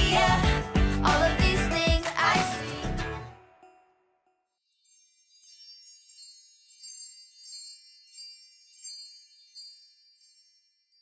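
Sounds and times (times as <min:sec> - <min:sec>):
high tinkling chimes: 0:04.4 - 0:11.0.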